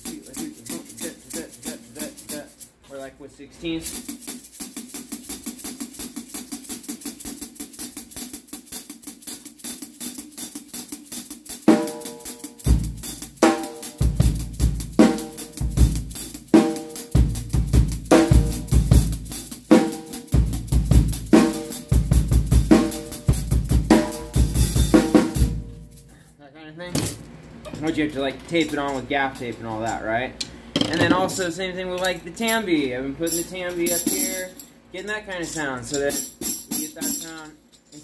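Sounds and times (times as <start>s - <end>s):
tambourine jingles: 0.0s - 2.8s, 3.7s - 26.3s, 31.3s - 38.0s.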